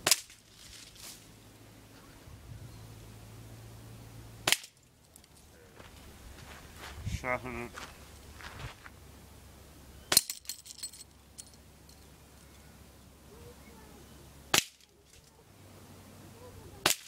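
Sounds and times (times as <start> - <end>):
air rifle shots cracking: 4.4 - 4.8
thin metallic ringing: 10.0 - 12.7.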